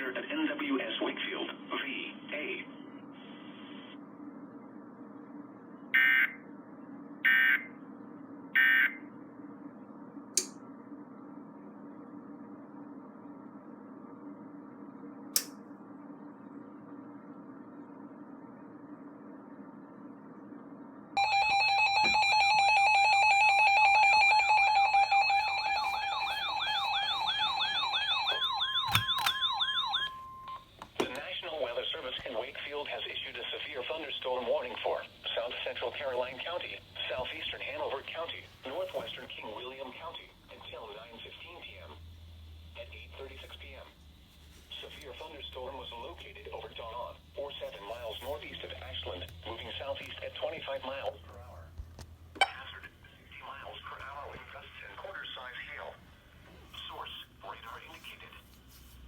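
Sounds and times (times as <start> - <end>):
steady low hum: 0.0 - 59.0
warbling electronic alert siren: 21.2 - 30.6.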